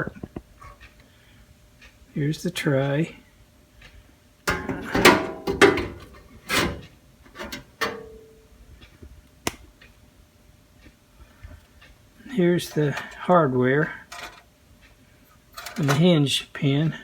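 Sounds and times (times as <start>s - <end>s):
metal toolbox parts clanking: 4.5s - 8.3s, 14.1s - 14.4s, 15.6s - 16.1s.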